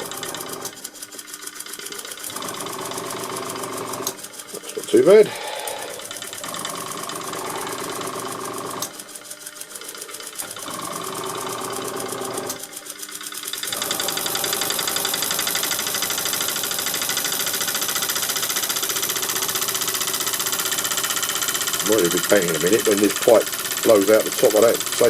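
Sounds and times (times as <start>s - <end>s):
model steam engine chattering: 4.4s - 5.4s, 13.7s - 25.0s.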